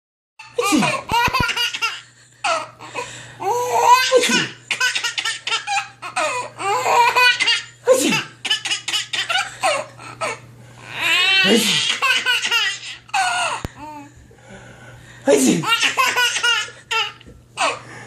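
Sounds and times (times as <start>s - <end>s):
baby laughing: 0.4s - 10.4s, 11.0s - 14.0s, 15.6s - 17.8s
sneezing: 4.1s - 4.6s, 7.9s - 8.3s, 11.4s - 12.0s.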